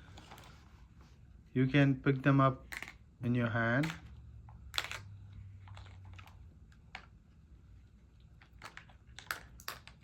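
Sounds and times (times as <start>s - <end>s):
stones clicking against toy: 3.8s - 7.1s.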